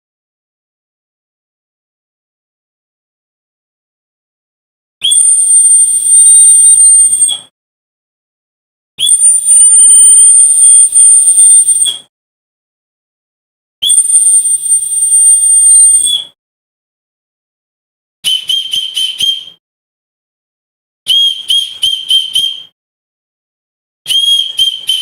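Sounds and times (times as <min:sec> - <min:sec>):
short whistle toots: 0:05.0 - 0:07.5, 0:09.0 - 0:12.1, 0:13.8 - 0:16.4, 0:18.2 - 0:19.6, 0:21.1 - 0:22.8, 0:24.1 - 0:25.0
shrill dog whistle blasts: 0:05.0 - 0:07.5, 0:09.0 - 0:12.1, 0:13.8 - 0:16.4, 0:18.2 - 0:19.6, 0:21.1 - 0:22.8, 0:24.1 - 0:25.0.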